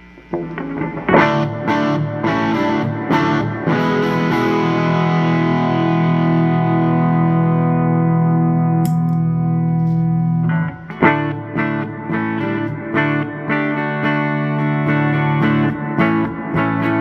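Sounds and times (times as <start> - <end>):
electric guitar chords strummed: 0.0 - 17.0.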